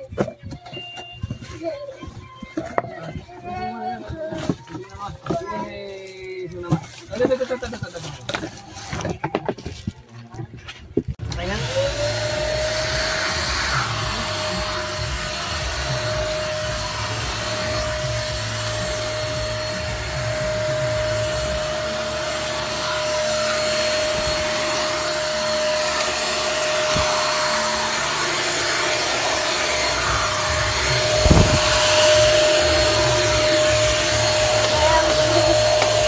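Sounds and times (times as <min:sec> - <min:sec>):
handheld vacuum cleaner running: 0:11.2 - 0:36.0.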